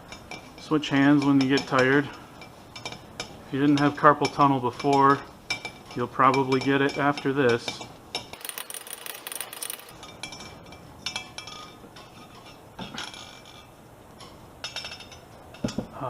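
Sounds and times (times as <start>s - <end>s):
metal parts clinking and rattling: 8.3s - 10.4s.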